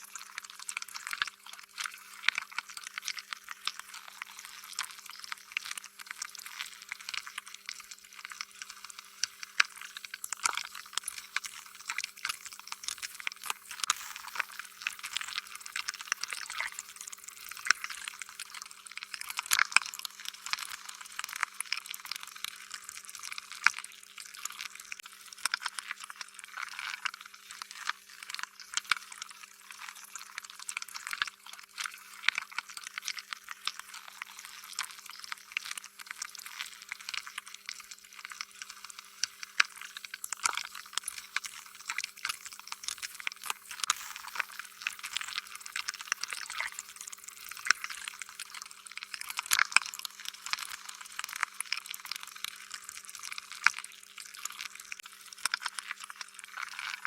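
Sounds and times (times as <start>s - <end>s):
slime squelching and popping: 34.8s - 52.6s.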